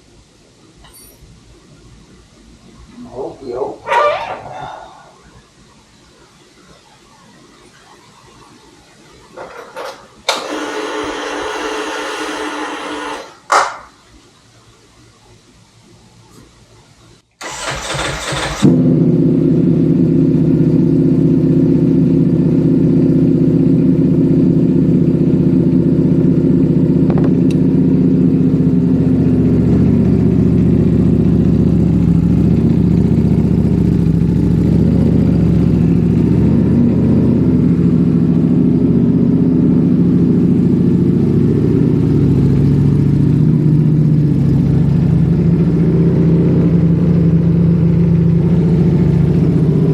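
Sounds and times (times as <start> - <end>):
motorcycle starter cranking: 17.4 - 18.7
motorcycle engine idling: 17.4 - 49.9.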